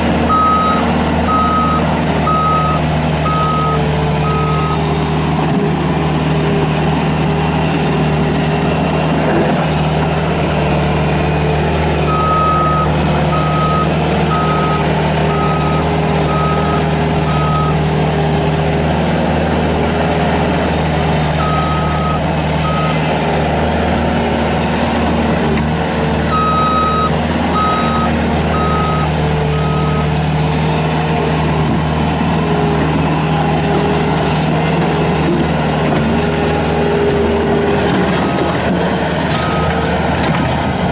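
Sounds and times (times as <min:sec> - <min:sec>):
diesel engine running: 0:00.0 - 0:40.9
backup alarm beeping: 0:00.3 - 0:04.8, 0:12.1 - 0:17.8, 0:21.4 - 0:23.0, 0:26.3 - 0:30.1.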